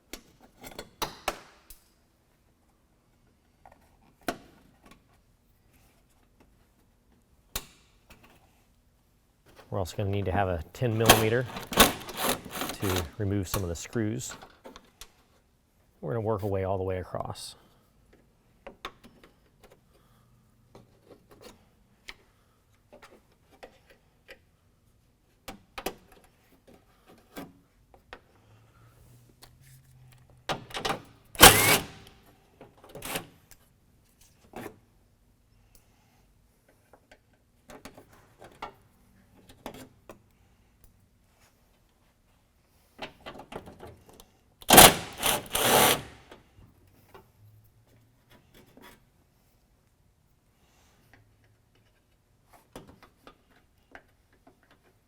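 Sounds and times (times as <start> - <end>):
tool clicks and knocks: 11.0 - 13.2, 30.8 - 32.1, 44.6 - 46.3.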